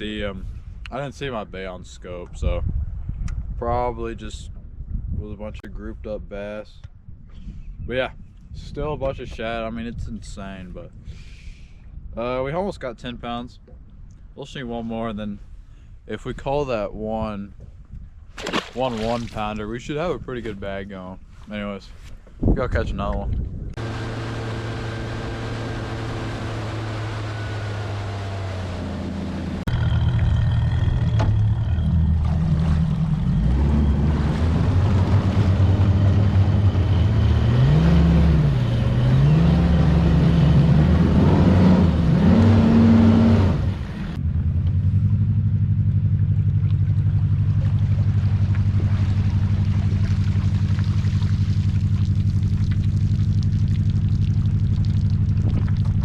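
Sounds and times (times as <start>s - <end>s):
outboard motor running: 23.8s - 41.1s, 45.3s - 56.0s.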